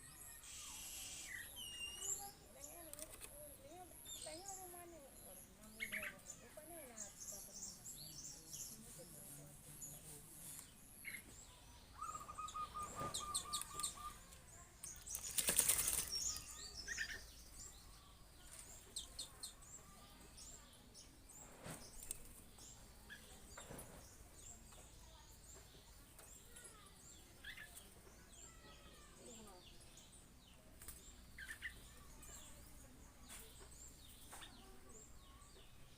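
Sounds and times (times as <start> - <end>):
small birds chirping: 0.0 - 35.9
bird wings flapping: 15.0 - 16.4.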